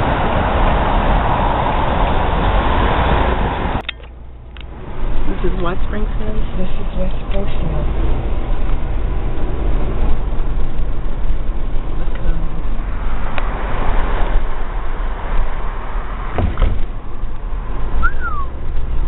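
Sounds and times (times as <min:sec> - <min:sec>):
car road and engine rumble: 0:00.0 - 0:19.0
sharp click: 0:03.8 - 0:04.7.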